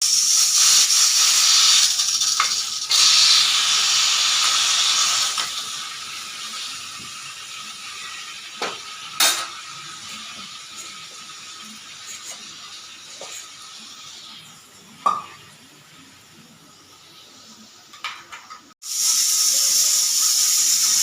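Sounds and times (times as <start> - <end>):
pressure cooker whistle hissing: 0.0 - 10.8, 18.8 - 21.0.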